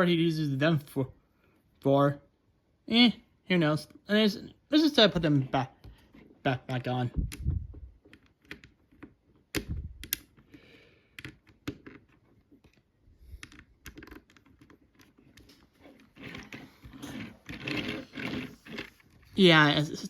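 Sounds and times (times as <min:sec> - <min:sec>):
plastic toy clicks and taps: 0:08.1 - 0:10.5.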